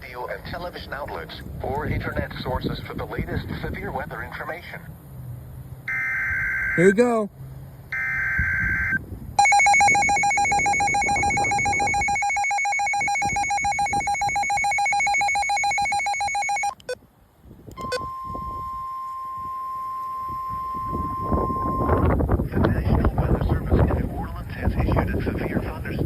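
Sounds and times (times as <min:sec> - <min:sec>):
steady warning alarm tone: 0:08.0 - 0:17.0, 0:17.8 - 0:22.1
two-tone alarm tone: 0:08.0 - 0:17.0, 0:17.8 - 0:22.0.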